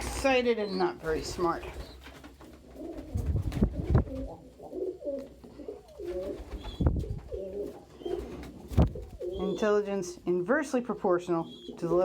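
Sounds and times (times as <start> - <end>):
pigeons cooing: 0.0 - 9.8, 11.4 - 12.0.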